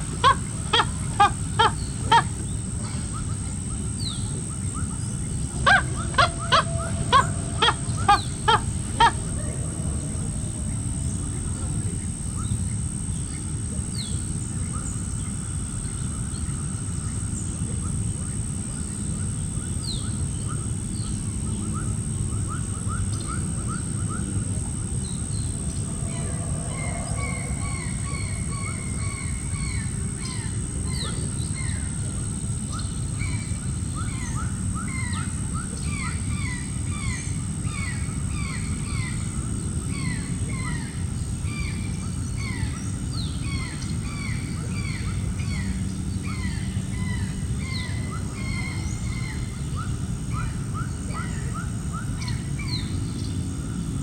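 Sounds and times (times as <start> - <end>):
birds chirping: 0.0 - 13.2, 23.2 - 34.4
steady low rumble: 0.0 - 34.8
constant high whine: 0.0 - 54.0.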